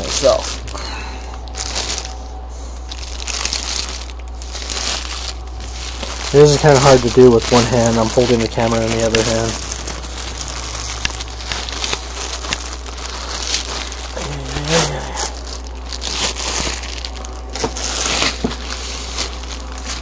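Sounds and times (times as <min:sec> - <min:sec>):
packaging crinkling and rustling: 0:00.0 - 0:20.0
person humming: 0:14.1 - 0:15.4.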